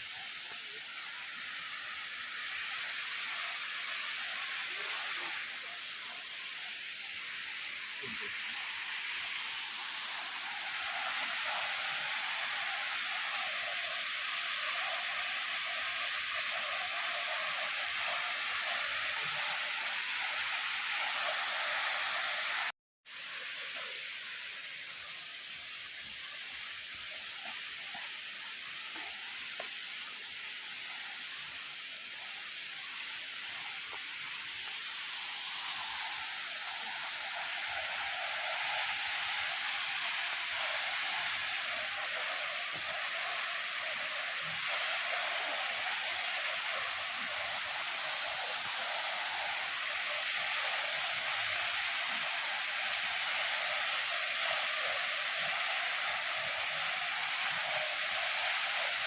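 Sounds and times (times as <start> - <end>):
waterfall rushing: 7.6 - 18.0, 33.4 - 59.0.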